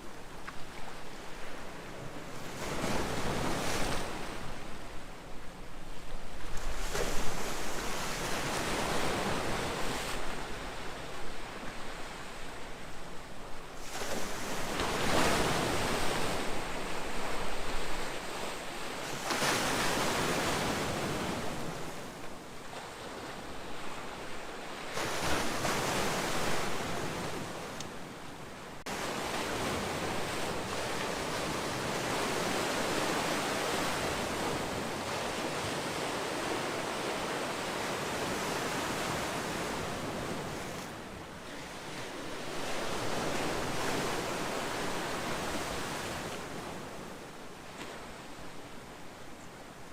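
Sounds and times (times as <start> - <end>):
sea waves breaking: 13.8 - 48.8.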